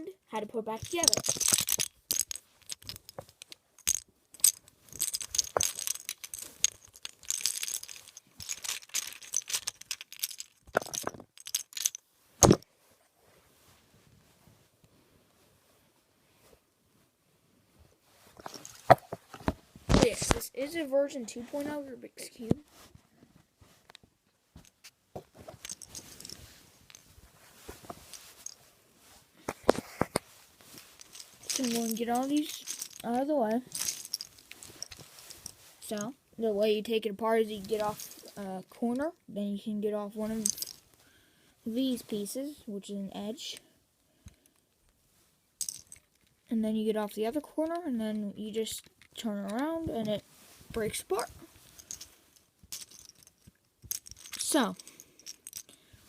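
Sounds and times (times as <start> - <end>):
plastic cube pieces clicking: 0.8 - 12.6, 31.0 - 33.1, 53.9 - 55.7.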